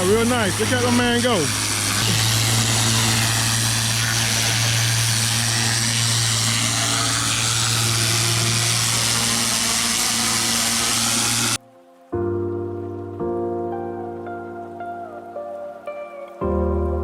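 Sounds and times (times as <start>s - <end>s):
pressure washer engine hum: 0.0s - 11.6s
water spray hissing: 0.0s - 11.6s.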